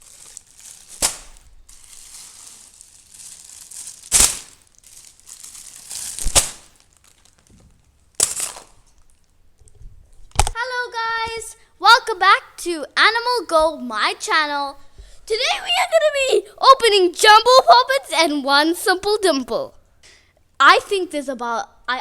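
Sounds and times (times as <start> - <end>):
plastic crinkling: 0.0 - 10.6.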